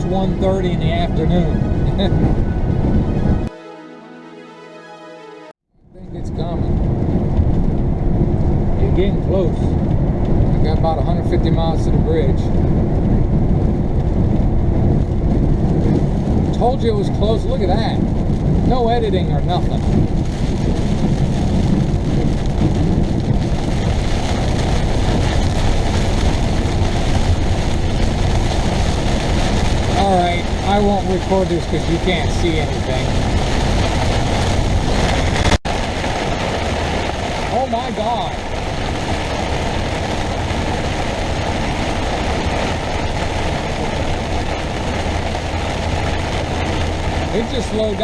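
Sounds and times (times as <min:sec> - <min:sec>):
road noise: 0:00.0 - 0:03.6, 0:05.7 - 0:48.0
engine rumble: 0:05.8 - 0:48.0
heavy rain on vehicle cab: 0:06.4 - 0:48.0.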